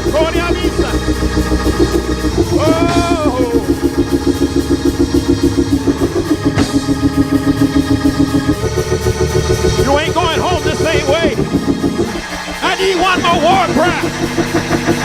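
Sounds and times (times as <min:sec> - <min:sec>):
band with drum kit playing: 0:00.0 - 0:15.0
person shouting: 0:02.5 - 0:03.8.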